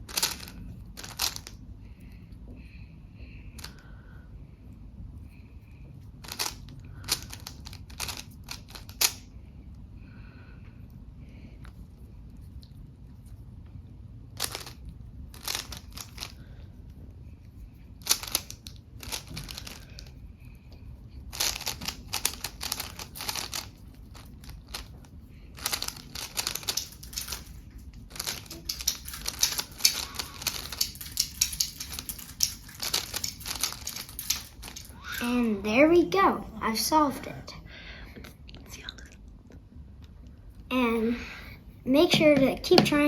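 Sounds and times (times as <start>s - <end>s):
puzzle cube turning clicks: 0.1s - 1.6s, 6.2s - 9.3s, 15.4s - 16.4s, 18.0s - 20.1s, 21.3s - 24.9s, 25.6s - 34.9s.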